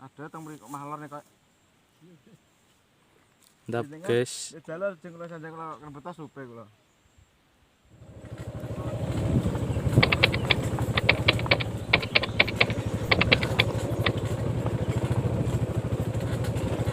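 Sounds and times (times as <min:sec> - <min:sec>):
small motorcycle engine running: 0:07.9 - 0:16.9
sharp clicks: 0:09.9 - 0:14.4.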